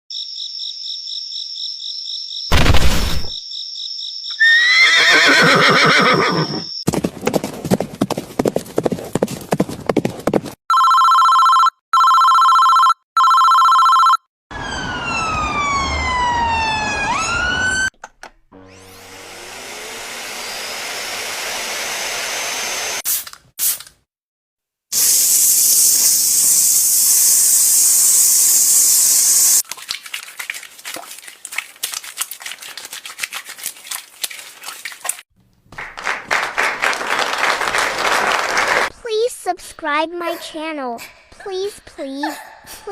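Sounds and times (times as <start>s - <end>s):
horse whinny: 4.4s - 6.7s
long loud hiss: 24.9s - 29.6s.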